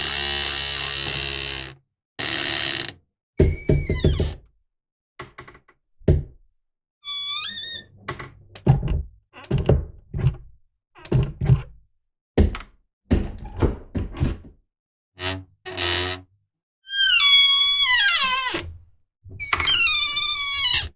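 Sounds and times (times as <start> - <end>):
wooden door creaking: 0.0 - 4.5, 7.0 - 11.8, 12.4 - 14.6, 15.2 - 16.3, 16.9 - 20.9
door knocking against frame: 3.4 - 4.4, 12.4 - 14.6.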